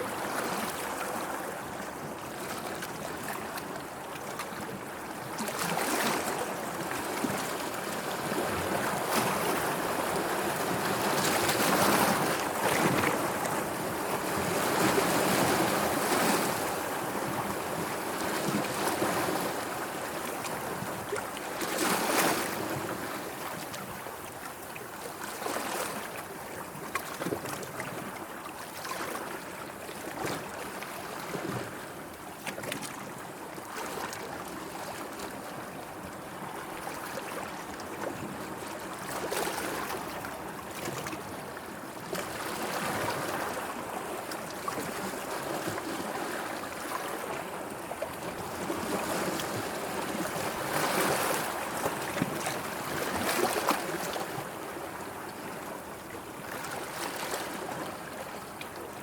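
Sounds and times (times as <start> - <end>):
sea water lapping: 36.4 - 58.9.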